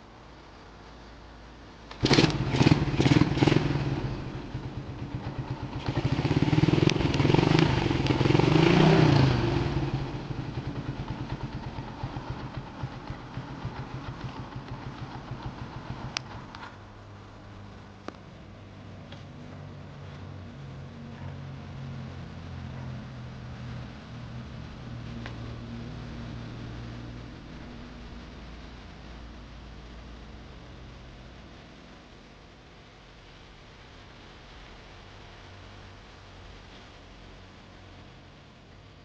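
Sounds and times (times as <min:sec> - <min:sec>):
motorcycle engine revving and idling: 0:01.9 - 0:17.7, 0:18.4 - 0:28.7.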